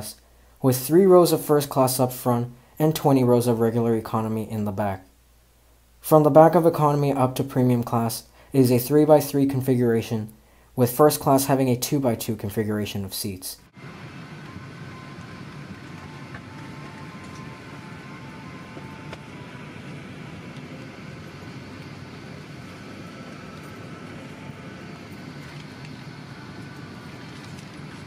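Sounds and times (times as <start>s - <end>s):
airplane cabin drone: 13.8s - 28.0s.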